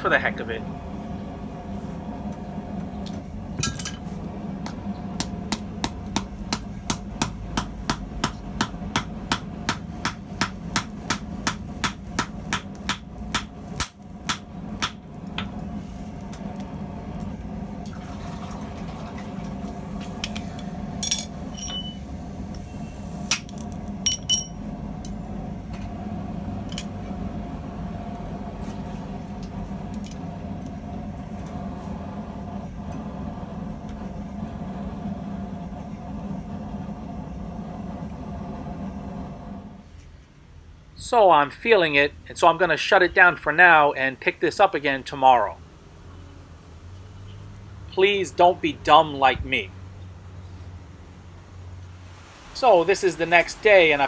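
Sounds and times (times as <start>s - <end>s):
hammer blows on metal rivet: 4.7s - 15.5s
low hum: 19.7s - 39.8s
metal clinks: 21.0s - 22.0s, 23.3s - 25.2s.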